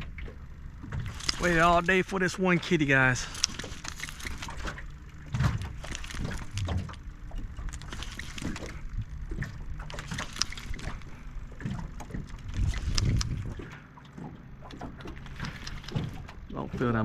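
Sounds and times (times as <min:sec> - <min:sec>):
scattered clicks: 0:01.0 - 0:13.7, 0:14.6 - 0:16.4.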